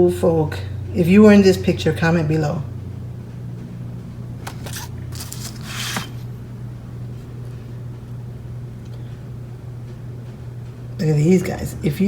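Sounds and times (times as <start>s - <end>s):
steady low hum: 0.0s - 12.0s
paper photographs rustling: 4.4s - 6.3s.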